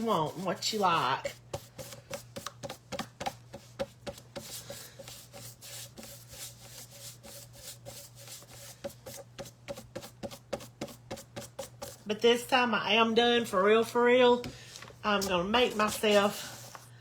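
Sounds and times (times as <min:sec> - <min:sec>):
scratchy paintbrush strokes: 0:03.5 - 0:12.1.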